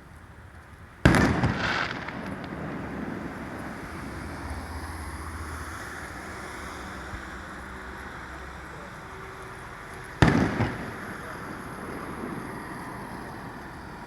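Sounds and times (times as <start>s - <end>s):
firework bang with rumbling tail: 1.0s - 4.2s, 10.2s - 13.6s.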